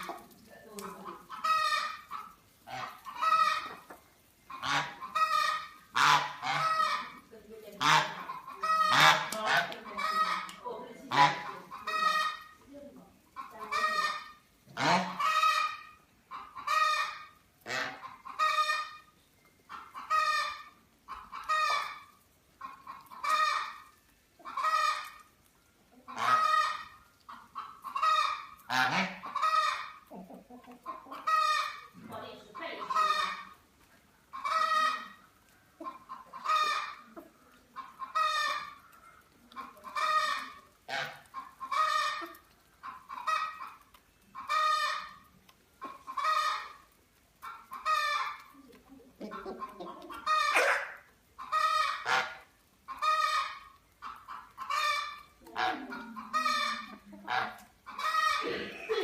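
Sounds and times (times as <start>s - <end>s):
geese honking: 0.0s - 12.6s, 13.4s - 19.1s, 19.7s - 25.3s, 26.0s - 30.1s, 30.8s - 37.2s, 37.8s - 48.5s, 49.2s - 59.0s
other fowl calling: 0.8s - 7.2s, 7.8s - 12.6s, 13.4s - 19.1s, 26.1s - 30.1s, 30.8s - 33.6s, 34.3s - 37.2s, 39.5s - 48.5s, 49.2s - 59.0s.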